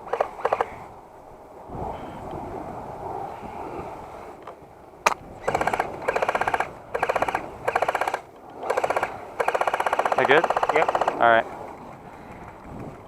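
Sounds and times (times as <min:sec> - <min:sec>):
airsoft rifle full-auto bursts: 0:00.1 - 0:00.7, 0:05.4 - 0:11.2.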